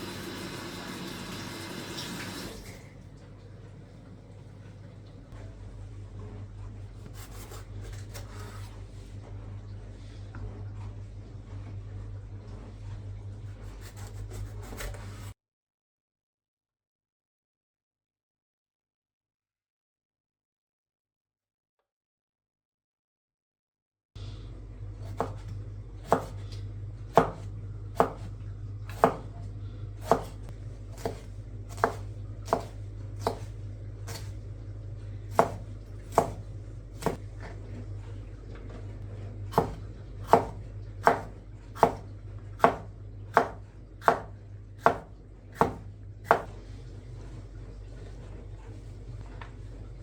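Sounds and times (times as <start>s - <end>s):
knife chopping on cutting board: 7.0s - 8.7s, 13.6s - 15.3s, 25.0s - 26.4s, 27.1s - 28.3s, 28.9s - 29.3s, 30.0s - 34.4s, 35.3s - 37.6s, 39.5s - 46.6s
steady low hum: 24.2s - 50.0s.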